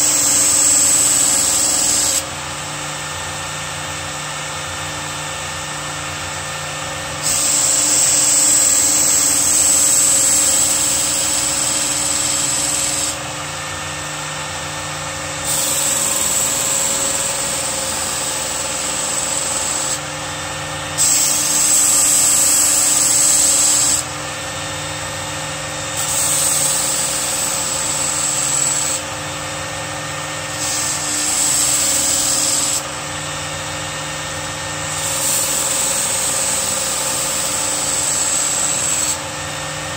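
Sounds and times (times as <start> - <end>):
knife grinding on abrasive belt: 0.0 - 2.3, 7.2 - 13.2, 15.4 - 20.0, 21.0 - 24.1, 25.9 - 29.1, 30.4 - 33.0, 34.9 - 39.3
belt sharpener motor running: 0.0 - 4.5, 6.1 - 39.9.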